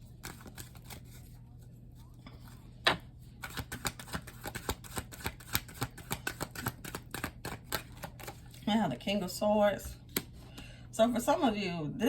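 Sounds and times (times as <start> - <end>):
cards being shuffled: 0.0 - 8.6, 10.0 - 10.4.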